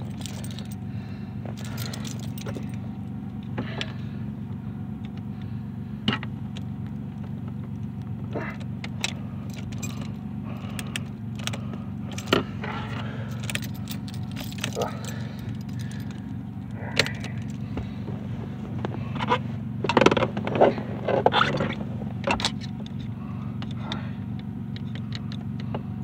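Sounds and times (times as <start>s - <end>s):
keys jangling on a ring: 0.0s - 0.8s, 1.5s - 2.9s, 8.9s - 16.3s, 17.0s - 17.6s
steady low hum: 0.0s - 26.0s.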